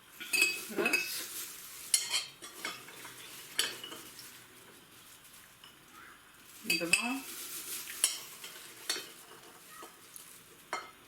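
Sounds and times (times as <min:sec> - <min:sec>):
spoon scraping and clinking dish: 0:00.2 - 0:01.3, 0:01.9 - 0:04.2, 0:08.0 - 0:10.0.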